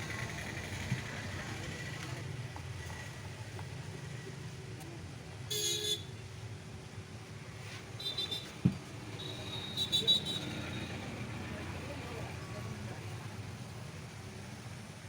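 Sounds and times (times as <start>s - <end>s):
background traffic rumble: 0.0s - 15.0s
vehicle horn toot: 5.5s - 6.1s.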